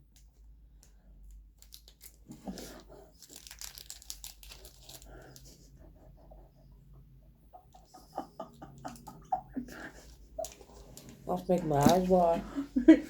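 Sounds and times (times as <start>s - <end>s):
snack wrapper crinkling: 0.8s - 5.5s.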